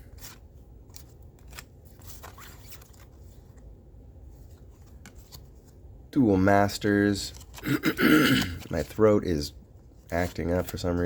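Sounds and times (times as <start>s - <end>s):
cards flicking and rustling: 0.0s - 3.7s, 4.3s - 5.8s, 7.1s - 7.8s, 10.0s - 11.0s.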